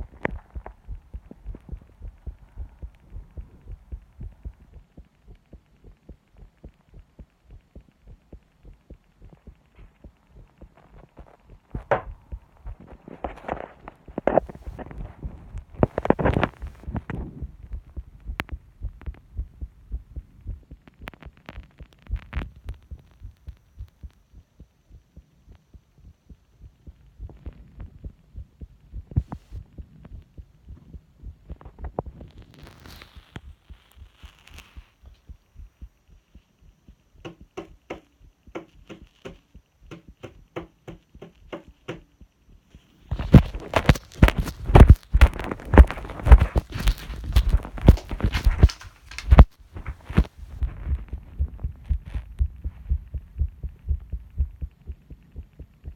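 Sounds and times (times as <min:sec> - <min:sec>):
heartbeat through stethoscope: 0:00.0 - 0:55.9
sharp knocks on a desk: 0:37.3 - 0:42.1.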